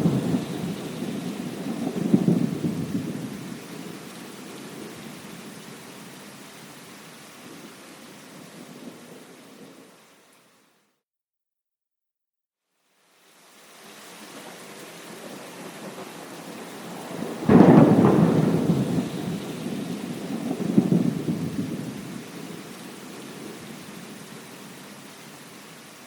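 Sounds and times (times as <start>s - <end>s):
thunderclap and rumbling thunder: 0.0s - 4.0s, 14.4s - 22.8s
rain hiss: 0.0s - 10.8s, 12.7s - 26.0s.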